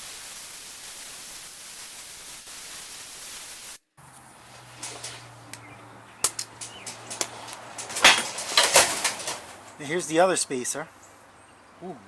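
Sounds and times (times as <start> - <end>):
tools clicking and tapping: 6.2 - 9.4.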